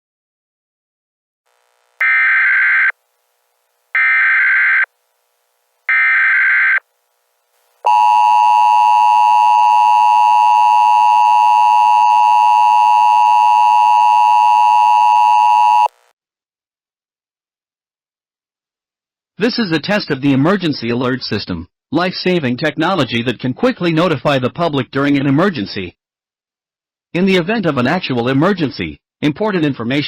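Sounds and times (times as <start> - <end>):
digital header data bursts: 2.0 - 2.9
steady two-tone attention signal: 7.9 - 15.9.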